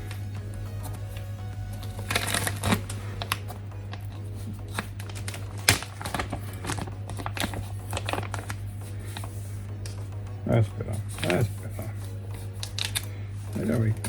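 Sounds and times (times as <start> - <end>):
plastic parts clicking and rattling: 0.8 - 10.1, 10.9 - 14.0.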